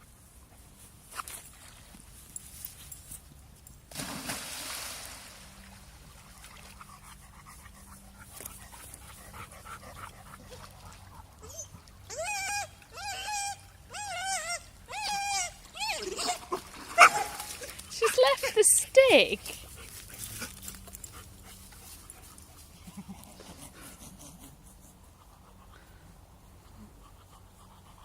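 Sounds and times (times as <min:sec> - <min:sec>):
dog whimpering: 0:11.4 - 0:16.6.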